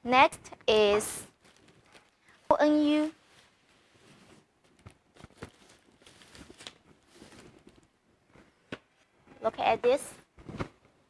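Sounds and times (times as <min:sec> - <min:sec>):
packaging rustling: 0:01.2 - 0:02.5, 0:03.1 - 0:08.0.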